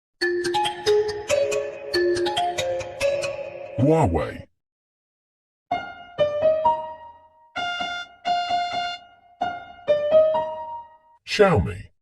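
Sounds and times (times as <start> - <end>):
phone ringtone melody: 0.2 - 3.8, 7.6 - 10.2.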